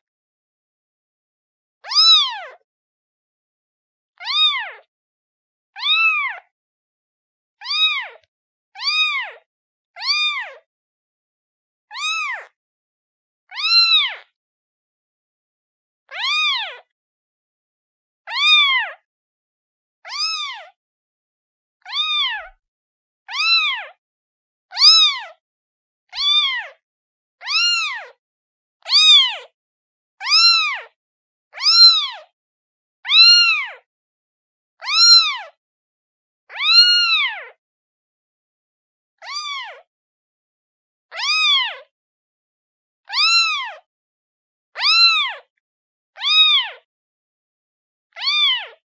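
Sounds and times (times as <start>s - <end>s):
kitten meowing: 1.8s - 2.6s, 4.2s - 4.8s, 5.8s - 6.5s, 7.6s - 9.4s, 10.0s - 10.6s, 11.9s - 12.6s, 13.5s - 14.2s, 16.1s - 16.8s, 18.3s - 19.0s, 20.1s - 20.7s, 21.9s - 22.6s, 23.3s - 24.0s, 24.7s - 25.3s, 26.2s - 26.8s, 27.4s - 28.2s, 28.9s - 29.4s, 30.2s - 30.9s, 31.6s - 32.2s, 33.1s - 33.9s, 34.8s - 35.6s, 36.5s - 37.6s, 39.2s - 39.9s, 41.1s - 41.8s, 43.1s - 43.8s, 44.8s - 45.5s, 46.2s - 46.9s, 48.2s - 48.8s.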